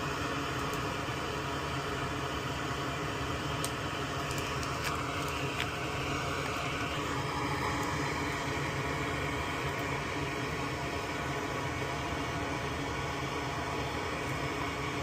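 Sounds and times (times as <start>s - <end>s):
fan whirring: 0.0s - 15.0s.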